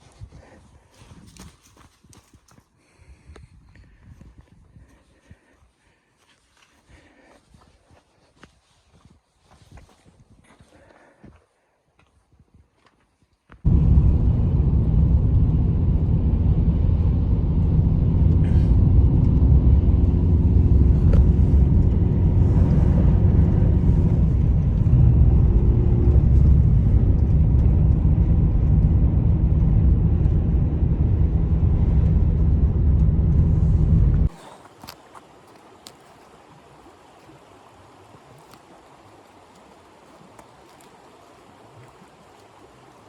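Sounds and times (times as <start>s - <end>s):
wind buffeting microphone: 13.7s - 34.4s.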